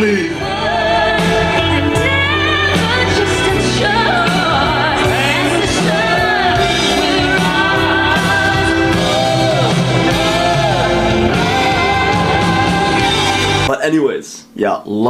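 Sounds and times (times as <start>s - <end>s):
band accompaniment: 0.0s - 13.8s.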